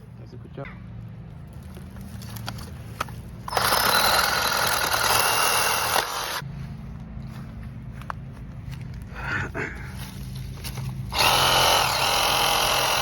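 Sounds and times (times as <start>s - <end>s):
reciprocating saw running: 3.5s - 6.4s, 11.1s - 13.0s.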